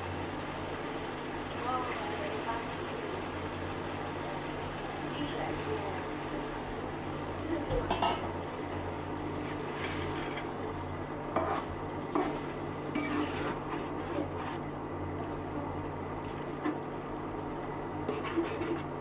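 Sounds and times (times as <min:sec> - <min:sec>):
spoon stirring in a pot: 0:09.3 - 0:14.8, 0:18.0 - 0:19.0.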